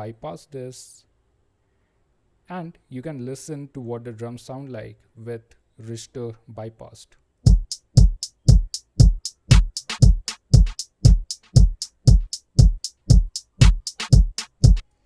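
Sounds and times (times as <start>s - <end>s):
bright high drum hits: 7.5s - 14.8s
kick drum hits: 7.5s - 14.8s.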